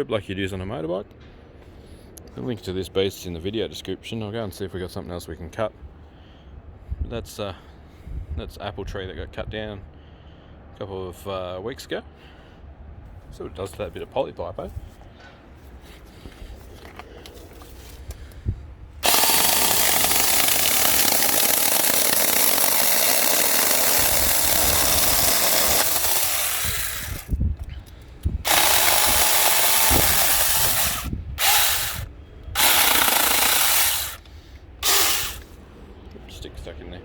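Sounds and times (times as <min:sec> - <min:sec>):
mini chainsaw cutting a stick: 0:19.0 - 0:27.4, 0:28.4 - 0:35.5.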